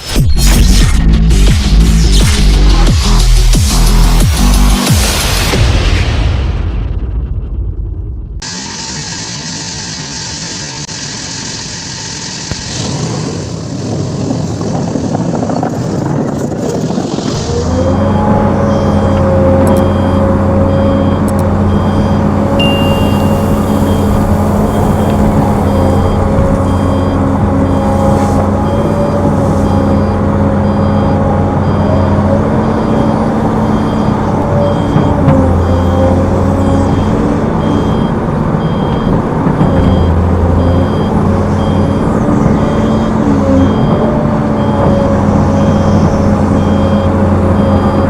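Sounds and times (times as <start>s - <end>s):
diesel machinery engine running: 16.7s - 48.0s
warning alarm beeping: 18.0s - 48.0s
thin whistle-like tone: 22.6s - 26.0s.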